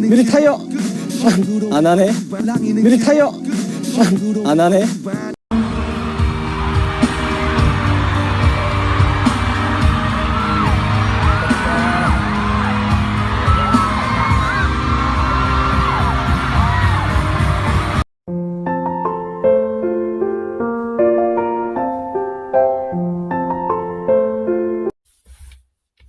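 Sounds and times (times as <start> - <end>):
pop music with heavy beat: 0.0 - 18.0
voices whooping and yelling: 6.3 - 17.7.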